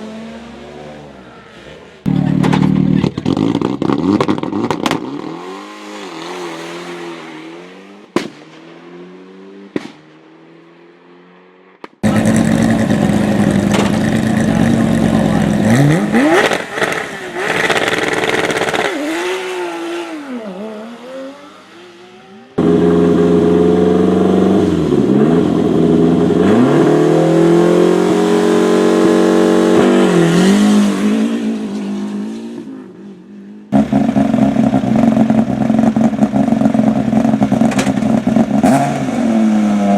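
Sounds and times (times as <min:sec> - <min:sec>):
rally car engines revving: 0:00.0 - 0:39.9
sharp exhaust bangs: 0:12.0 - 0:19.4.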